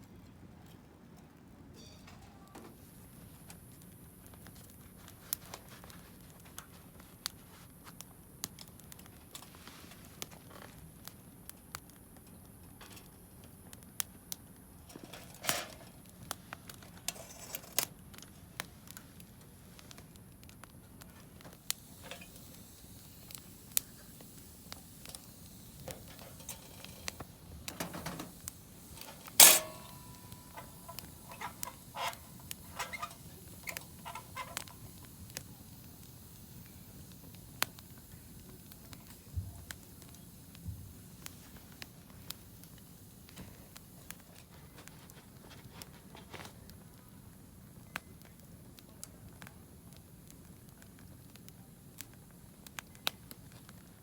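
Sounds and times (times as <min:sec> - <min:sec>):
loud ringing clink: 0:01.8 - 0:02.2, 0:29.0 - 0:31.5
campfire crackling and popping: 0:02.8 - 0:54.0.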